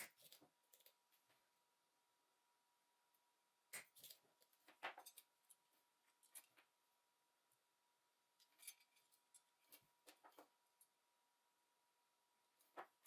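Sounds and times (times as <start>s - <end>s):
small tools clicking and scraping: 0.0s - 1.0s, 3.7s - 6.7s, 8.4s - 10.5s.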